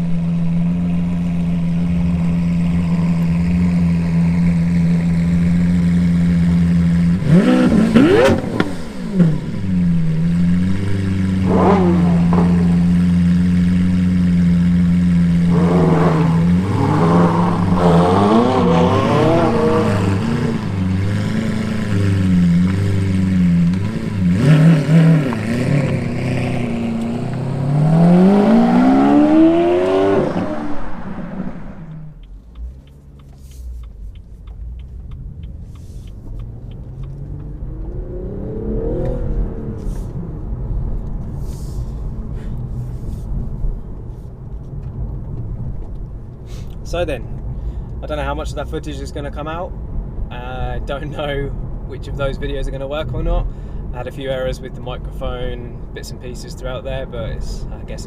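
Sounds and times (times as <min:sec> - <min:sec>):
car engine revving: 0:00.0 - 0:43.2.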